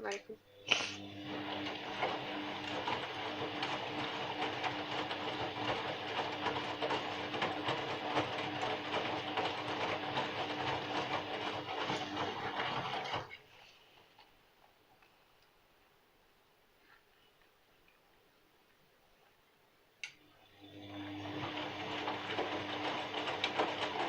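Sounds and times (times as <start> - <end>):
washing machine motor hum: 0.4 - 13.4, 20.1 - 24.0.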